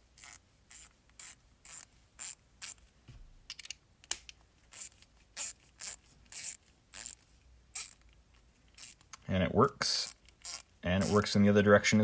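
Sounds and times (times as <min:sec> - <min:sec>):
ratchet clicking: 0:04.7 - 0:07.2, 0:08.8 - 0:09.1, 0:10.0 - 0:11.2.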